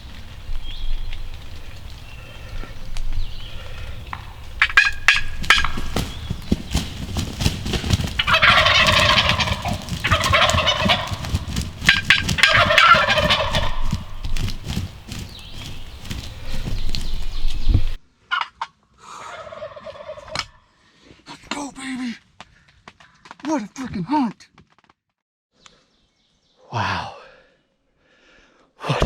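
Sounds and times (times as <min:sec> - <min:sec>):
wild turkey gobbling: 0:03.8 - 0:20.6.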